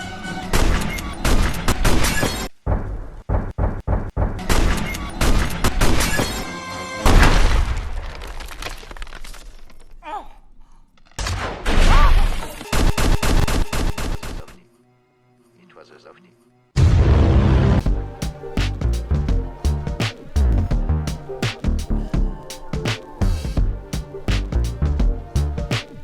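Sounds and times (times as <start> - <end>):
music: 0.0 - 7.2, 14.6 - 26.0.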